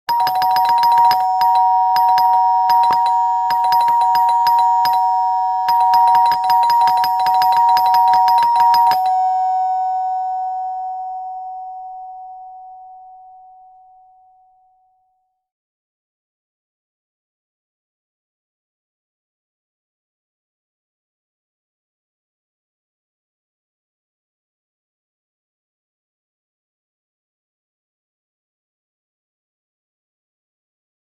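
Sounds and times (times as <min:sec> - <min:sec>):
doorbell ringing: 0:00.1 - 0:13.4.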